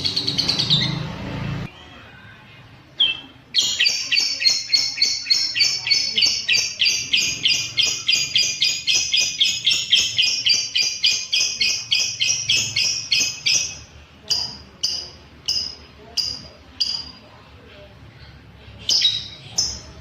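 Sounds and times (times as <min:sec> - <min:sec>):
bird chattering rapidly: 0:03.0 - 0:17.2.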